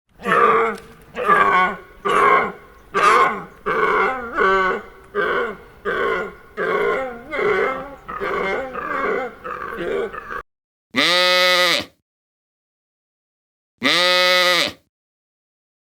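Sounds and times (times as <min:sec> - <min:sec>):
wildebeest grunting calls: 0:00.2 - 0:10.4.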